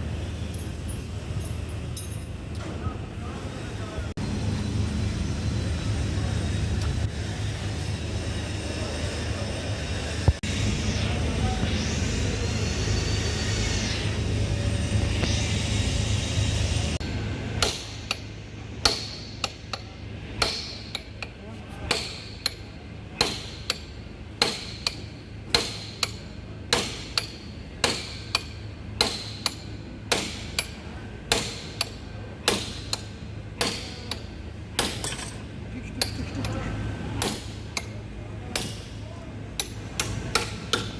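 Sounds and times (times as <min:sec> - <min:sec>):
steady rumble: 0:00.0 - 0:21.0
hammer striking metal: 0:17.6 - 0:35.4, 0:37.2 - 0:39.0, 0:39.6 - 0:40.9.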